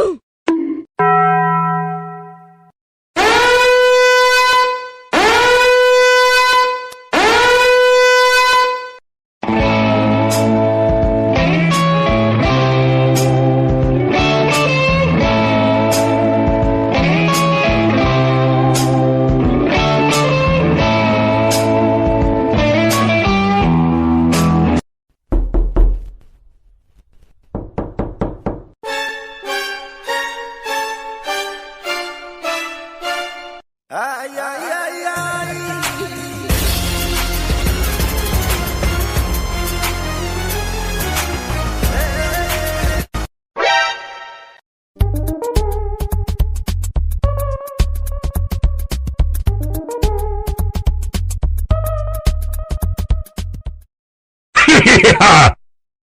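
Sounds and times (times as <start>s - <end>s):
horn blasts: 3.2s - 9.0s
electric guitar music with bass: 9.4s - 24.8s
deep thump: 25.3s - 26.3s
sharp knocks: 25.3s - 26.4s, 27.5s - 28.8s.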